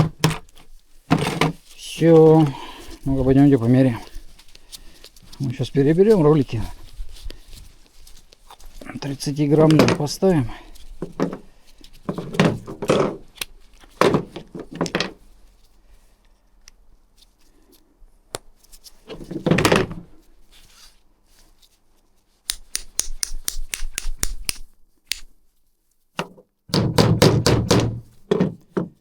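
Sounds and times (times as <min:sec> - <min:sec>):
knocks and handling noises: 0:00.0 - 0:15.6, 0:18.3 - 0:20.3, 0:26.1 - 0:29.0.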